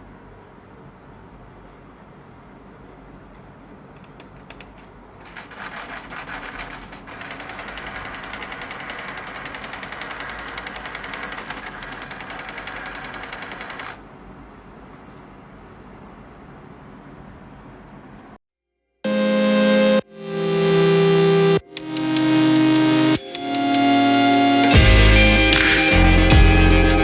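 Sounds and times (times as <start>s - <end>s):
laser printer rattling grind: 5.2s - 14.0s.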